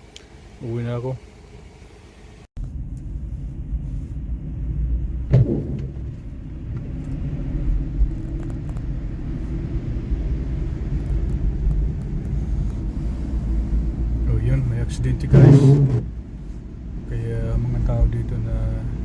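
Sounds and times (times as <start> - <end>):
car driving low rumble: 0.0 - 19.0
thump: 5.3 - 6.3, 15.4 - 16.1.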